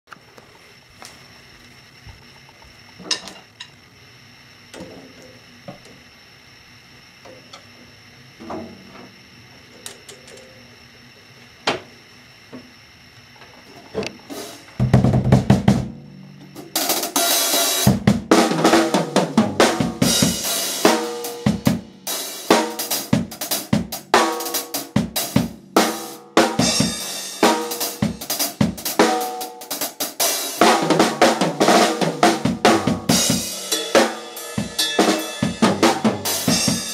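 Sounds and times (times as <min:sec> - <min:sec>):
drum kit played loudly: 0:14.3 - 0:36.9.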